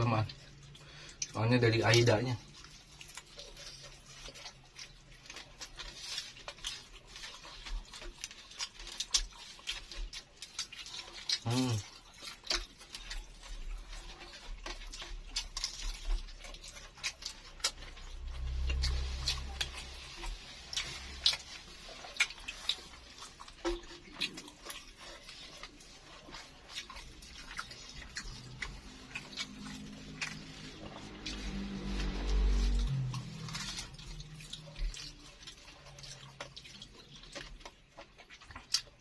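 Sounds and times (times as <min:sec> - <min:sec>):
crunchy chewing: 0:00.0 - 0:39.0
low rumble: 0:17.6 - 0:22.0, 0:28.0 - 0:35.1.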